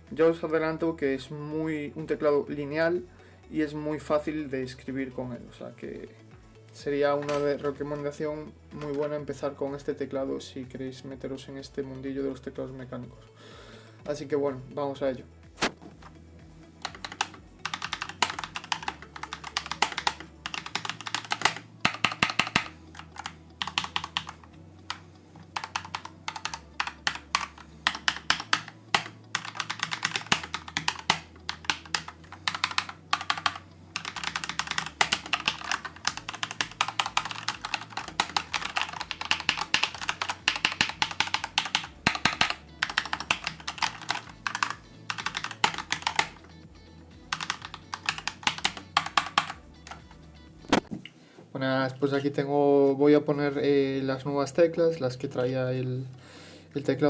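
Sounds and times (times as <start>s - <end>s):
mechanical keyboard typing: 16.8s - 25.0s, 25.6s - 46.4s, 47.3s - 50.0s, 50.7s - 50.9s.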